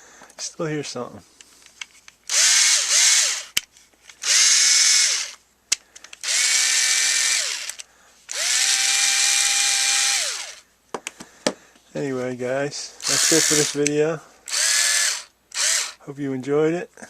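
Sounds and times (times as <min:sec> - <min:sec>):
electric screwdriver whirring: 0:02.3 - 0:03.6, 0:04.2 - 0:05.4, 0:06.2 - 0:10.6, 0:13.0 - 0:13.9, 0:14.5 - 0:16.0.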